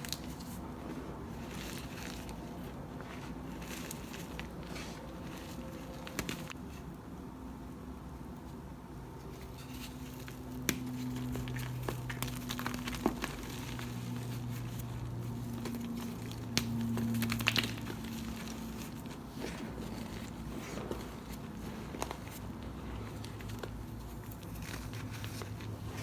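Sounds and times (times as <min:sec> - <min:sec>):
low steady hum: 0:00.0 - 0:26.0
chalk cubes crunching: 0:09.8 - 0:26.0
sharp cracks and crackles: 0:15.5 - 0:23.7.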